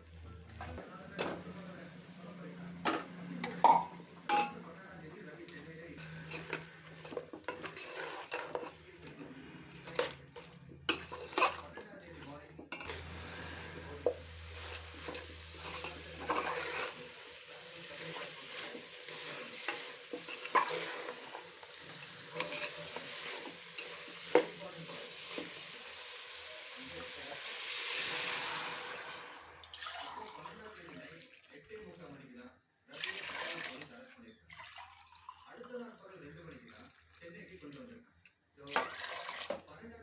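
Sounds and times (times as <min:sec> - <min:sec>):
metal spoon scraping a pot: 0:06.0 - 0:17.2, 0:17.9 - 0:24.4
food sizzling in hot oil: 0:12.7 - 0:30.2.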